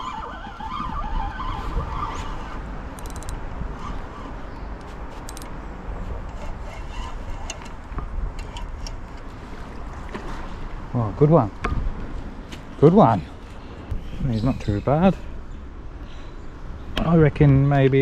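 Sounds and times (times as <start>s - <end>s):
fishing reel clicks and rattles: 3.0s - 3.4s, 5.3s - 5.5s.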